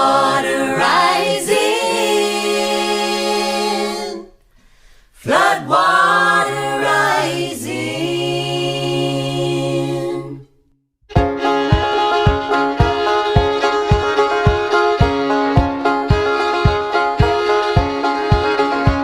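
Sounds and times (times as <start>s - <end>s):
unaccompanied voices singing chords: 0.0s - 4.4s, 5.2s - 10.5s.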